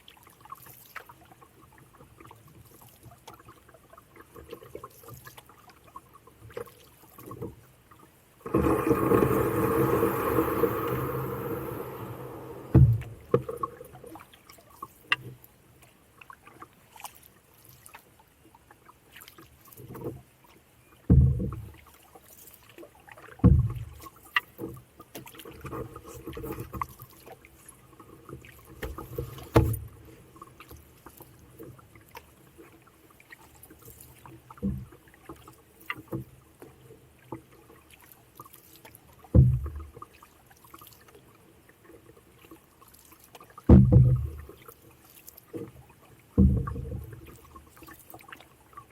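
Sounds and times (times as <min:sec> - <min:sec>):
faint water sounds: 0:00.0 - 0:48.9
paddle knocking against canoe hull: 0:12.6 - 0:13.8, 0:21.0 - 0:21.8, 0:23.2 - 0:27.0, 0:28.3 - 0:30.0, 0:34.5 - 0:35.0, 0:39.2 - 0:39.9, 0:43.6 - 0:44.6, 0:45.5 - 0:47.4.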